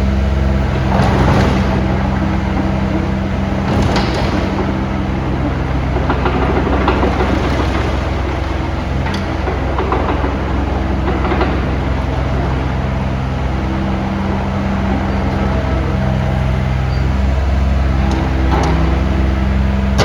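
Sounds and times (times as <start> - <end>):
excavator diesel engine running: 0.0 - 20.0
metallic clanks: 0.0 - 20.0.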